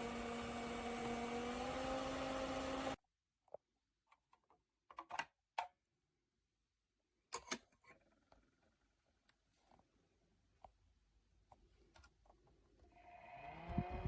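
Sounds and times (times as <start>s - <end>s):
fan motor hum and whir: 0.0s - 3.0s, 13.4s - 14.0s.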